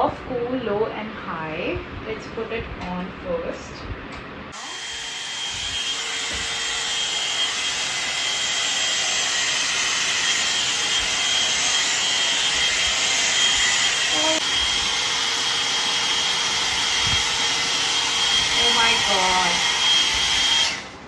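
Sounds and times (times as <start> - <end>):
hair dryer blowing air: 4.5 - 21.0
hair dryer motor whine: 4.5 - 21.0.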